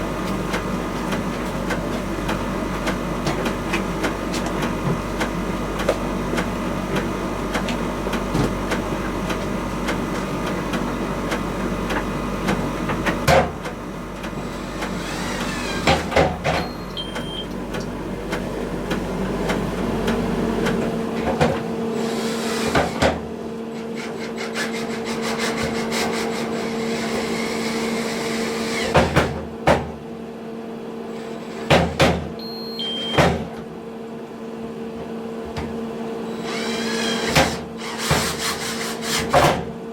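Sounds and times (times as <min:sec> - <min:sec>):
tumble dryer running: 0:00.0 - 0:24.0.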